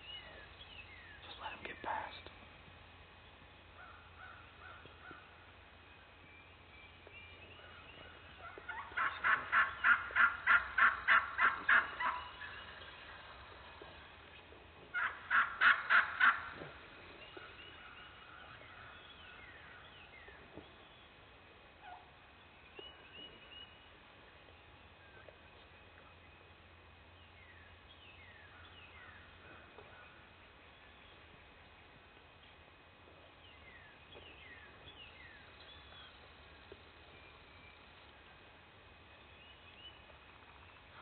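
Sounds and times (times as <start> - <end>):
turkey yelping: 8.4 - 12.7, 14.9 - 16.5.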